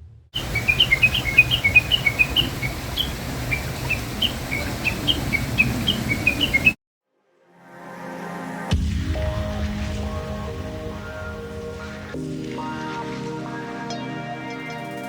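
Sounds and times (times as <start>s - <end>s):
birds chirping: 0.4s - 6.8s
outdoor hiss: 0.4s - 6.8s.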